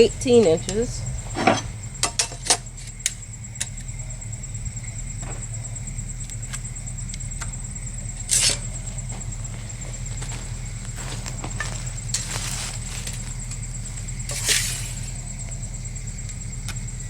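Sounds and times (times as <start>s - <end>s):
crickets trilling: 0.0s - 17.0s
low hum: 0.0s - 17.0s
scrape on wooden rack: 14.3s - 15.2s.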